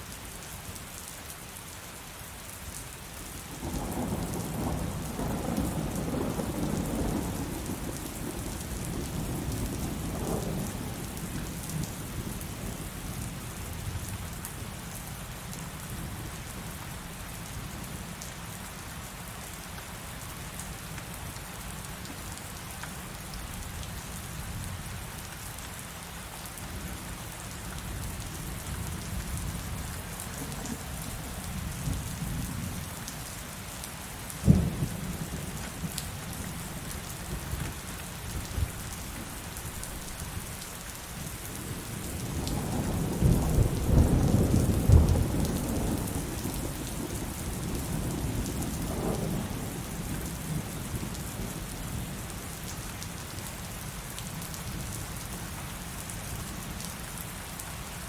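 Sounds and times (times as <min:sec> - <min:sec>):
heavy rain falling: 0:00.0 - 0:58.0
thunder rumbling: 0:41.6 - 0:49.6.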